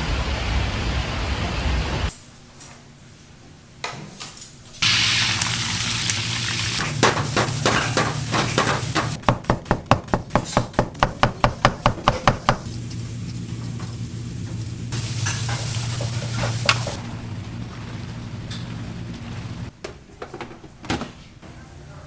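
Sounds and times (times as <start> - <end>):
food sizzling in hot oil: 4.8 - 9.2, 12.7 - 17.0.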